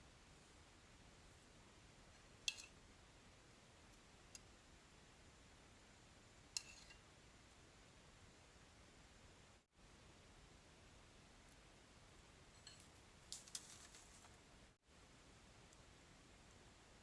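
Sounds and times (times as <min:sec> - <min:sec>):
kitchenware clinking: 0:12.6 - 0:12.9.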